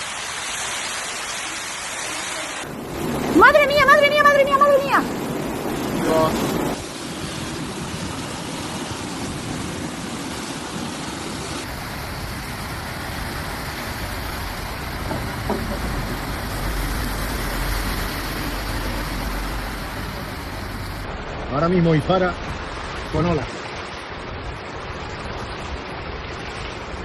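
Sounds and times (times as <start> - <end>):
floodwater rushing: 0.0 - 27.0
deep rumble: 11.8 - 21.7.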